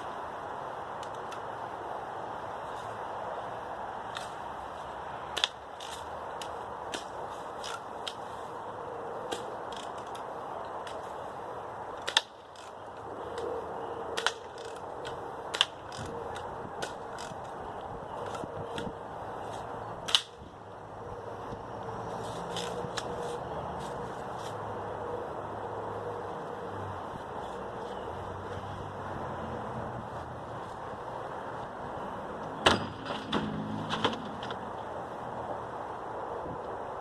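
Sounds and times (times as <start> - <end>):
bb gun cracks: 20.0 - 20.4.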